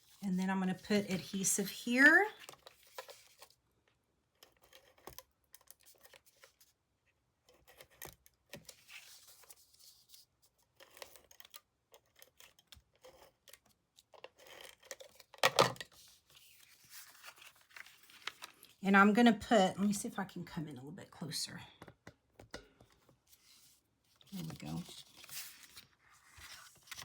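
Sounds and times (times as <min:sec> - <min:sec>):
paper rustling: 0:00.0 - 0:03.6, 0:08.7 - 0:11.2, 0:15.9 - 0:18.8, 0:23.3 - 0:27.0.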